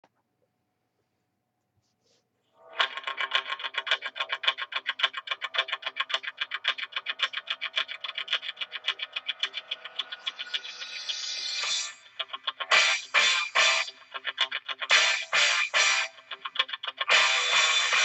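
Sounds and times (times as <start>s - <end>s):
pulsed guitar intro music: 7.4s - 18.0s.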